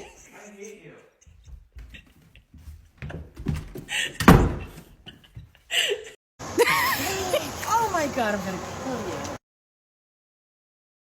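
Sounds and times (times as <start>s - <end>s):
loud thud: 4.2s - 4.7s.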